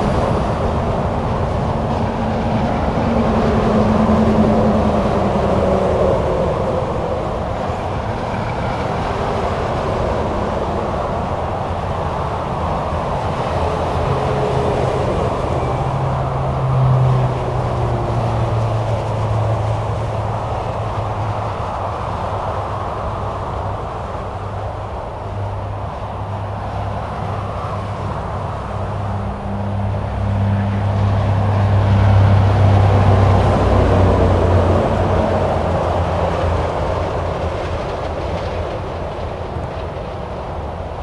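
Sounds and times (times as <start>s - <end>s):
low engine hum: 0.0s - 41.0s.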